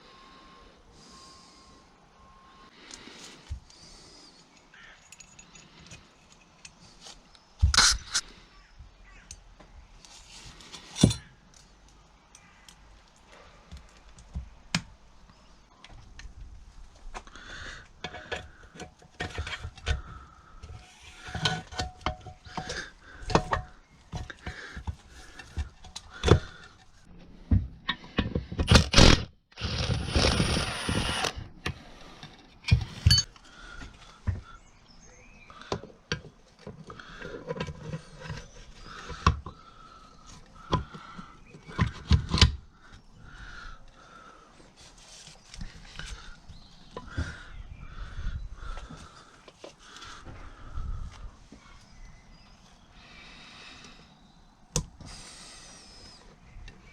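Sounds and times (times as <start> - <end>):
metal tools clinking and scraping: 4.5 - 8.3, 32.2 - 33.4
loud rasping noise: 28.7 - 31.4.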